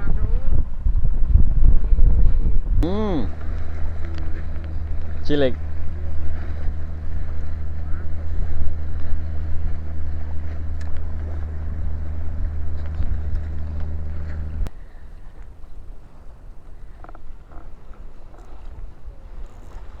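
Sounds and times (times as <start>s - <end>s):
low engine drone: 2.5s - 14.7s.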